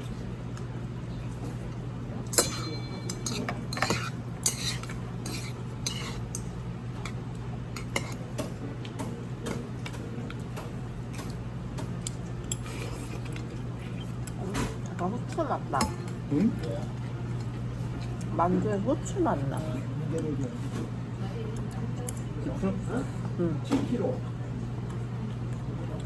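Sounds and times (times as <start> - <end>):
steady low hum: 0.0 - 26.0
utensils clinking against dishes: 1.4 - 20.9.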